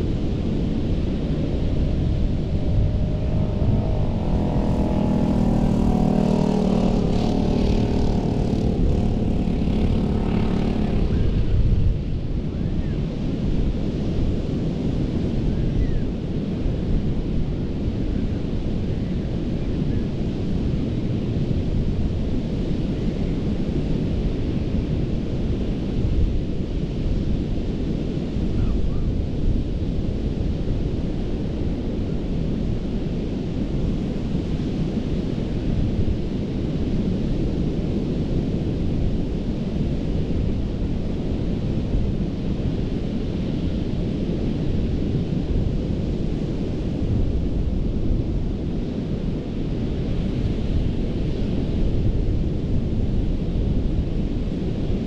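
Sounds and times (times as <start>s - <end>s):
wind buffeting microphone: 0.0s - 23.4s
motor droning: 1.2s - 11.7s
ocean surf on a beach: 29.2s - 55.0s.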